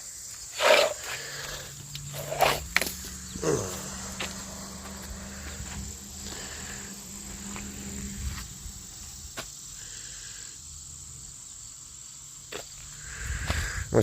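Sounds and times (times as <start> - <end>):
insects chirring: 0.0 - 14.0
low hum: 1.2 - 9.4.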